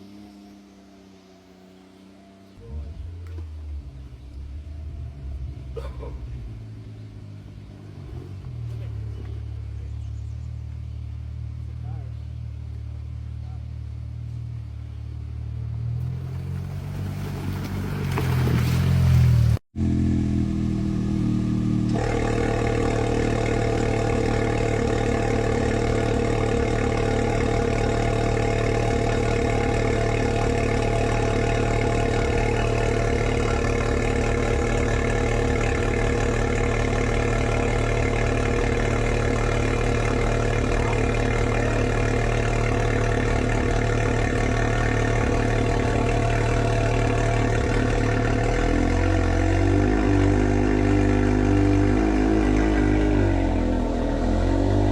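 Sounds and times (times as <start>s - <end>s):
engine idling: 0.0s - 54.9s.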